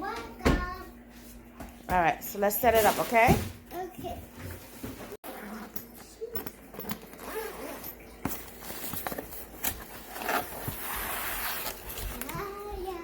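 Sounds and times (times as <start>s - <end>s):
packaging rustling: 8.3s - 12.6s.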